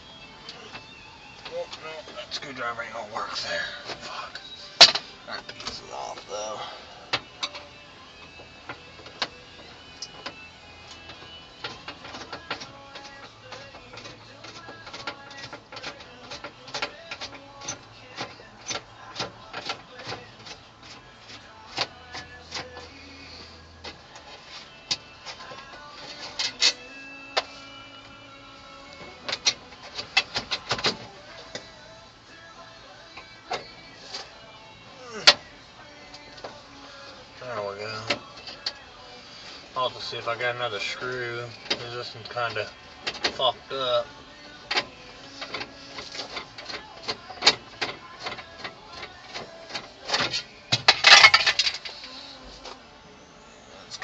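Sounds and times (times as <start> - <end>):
small hard parts clattering: 40.0 - 52.8.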